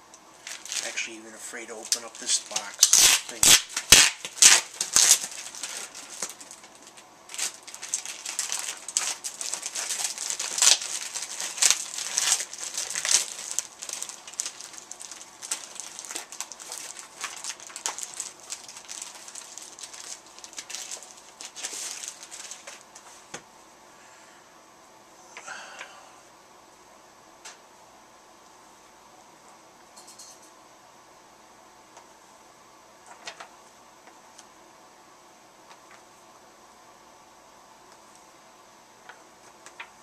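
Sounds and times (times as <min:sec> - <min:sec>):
packaging rustling and crinkling: 0:00.4 - 0:23.4.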